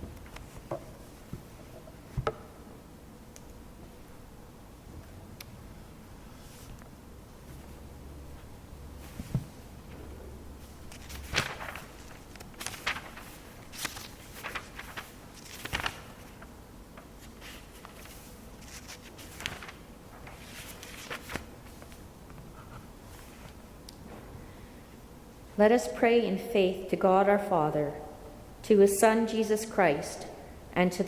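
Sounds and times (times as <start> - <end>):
rustling: 10.6 - 16.5.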